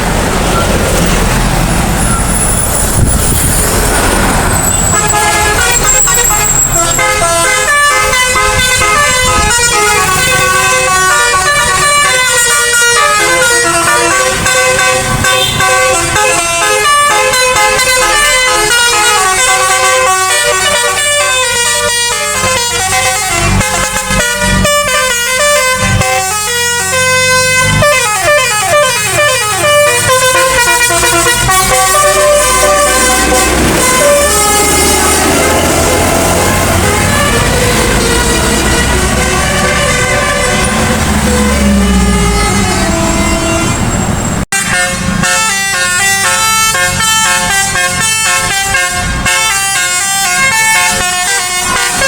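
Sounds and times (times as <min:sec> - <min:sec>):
bus engine running: 0:00.0 - 0:52.0
multi-tone musical air horn: 0:04.6 - 0:43.8, 0:44.5 - 0:52.0.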